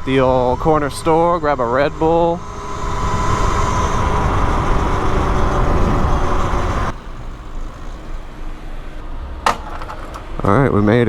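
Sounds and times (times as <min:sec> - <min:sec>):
wind rush on microphone: 0:00.0 - 0:08.3
electric motor whine: 0:00.0 - 0:10.4
low noise of bike slowing: 0:00.0 - 0:11.0.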